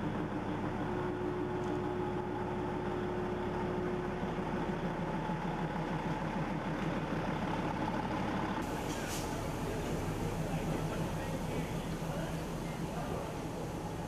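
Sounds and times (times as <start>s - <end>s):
train engine rumble: 0.0s - 14.0s
short hiss: 8.6s - 14.0s.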